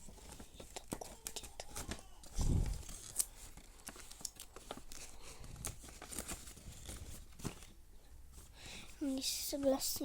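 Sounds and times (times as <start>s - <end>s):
paper and tape clicks and rustles: 0.0s - 7.8s.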